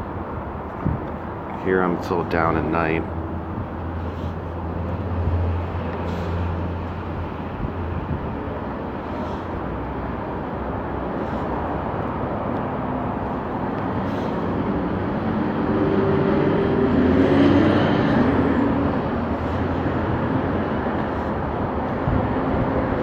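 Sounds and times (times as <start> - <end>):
road traffic: 0.0 - 23.0
vehicle engine passing: 10.9 - 23.0.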